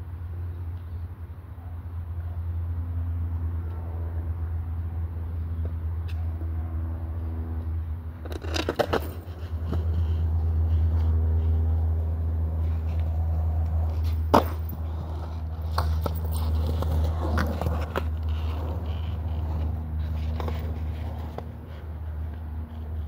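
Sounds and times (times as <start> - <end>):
skateboard wheels rolling on concrete: 2.4 - 23.0
skateboard clacks and knocks: 8.3 - 10.0, 13.8 - 21.5.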